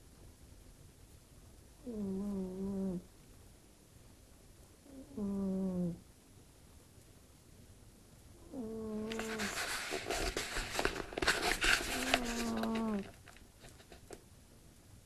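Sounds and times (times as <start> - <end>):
cat snoring: 1.8 - 3.1, 4.8 - 6.0, 8.4 - 9.4, 12.0 - 13.1.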